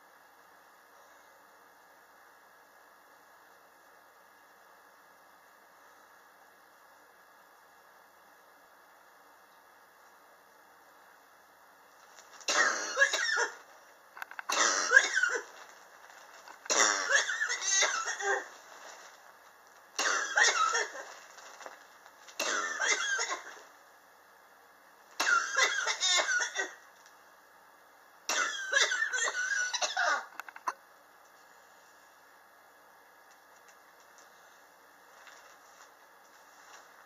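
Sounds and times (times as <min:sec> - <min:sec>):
person coughing: 0:12.5 - 0:13.6, 0:14.5 - 0:15.5, 0:16.7 - 0:18.6, 0:20.0 - 0:21.1, 0:22.4 - 0:23.6, 0:25.2 - 0:26.8, 0:28.3 - 0:30.3.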